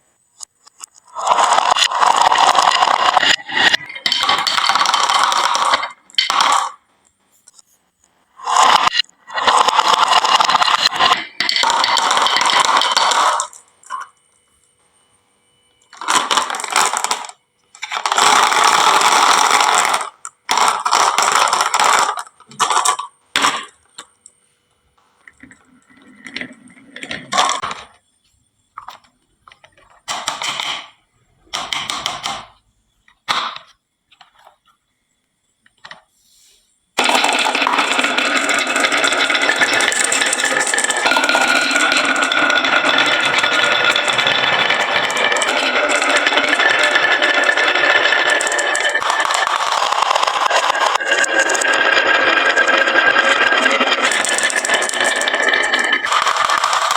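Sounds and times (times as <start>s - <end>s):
marbles clinking into toy trucks: 0.4s - 6.8s, 8.4s - 14.2s, 15.9s - 24.4s, 25.3s - 28.0s, 28.8s - 32.6s, 37.0s - 56.9s
marbles rattling down wooden run: 1.1s - 6.8s, 8.4s - 14.1s, 16.0s - 23.8s, 25.4s - 27.9s, 37.0s - 56.9s.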